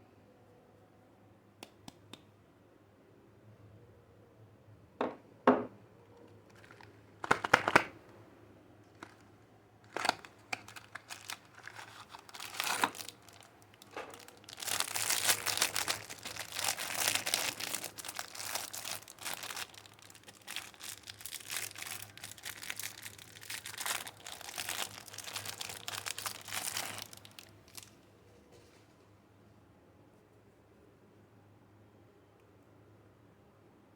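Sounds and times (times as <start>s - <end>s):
soap wrapper crinkling and tearing: 6.4s - 8.0s, 9.0s - 9.3s, 9.9s - 28.0s.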